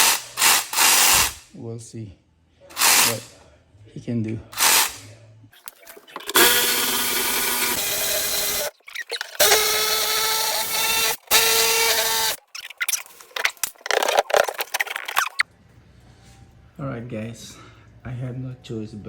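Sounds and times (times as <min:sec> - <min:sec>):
handheld power tool running: 0:00.0 - 0:01.4, 0:02.8 - 0:03.3, 0:04.6 - 0:05.0, 0:06.4 - 0:08.7, 0:09.4 - 0:12.4.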